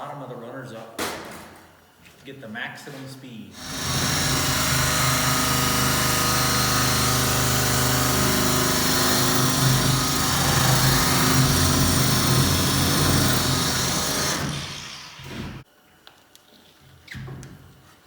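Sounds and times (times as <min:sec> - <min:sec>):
wire wheel scrubbing metal: 0:03.6 - 0:15.6.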